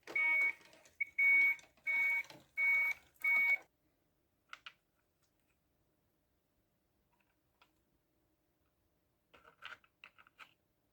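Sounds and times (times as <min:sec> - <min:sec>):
electronic alarm beeping: 0:00.2 - 0:03.6.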